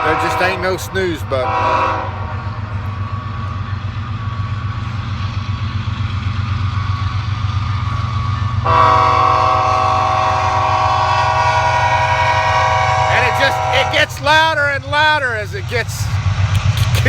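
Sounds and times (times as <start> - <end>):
train horn chord: 0.0 - 3.6, 7.9 - 14.5
train rumbling by: 0.0 - 17.0.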